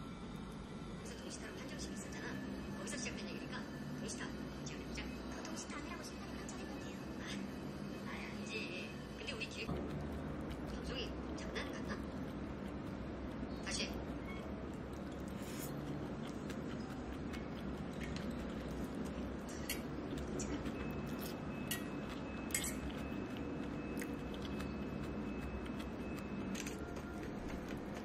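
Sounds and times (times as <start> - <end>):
steady low hum: 0.0 - 28.0
utensils and dishes clicking: 15.8 - 23.2.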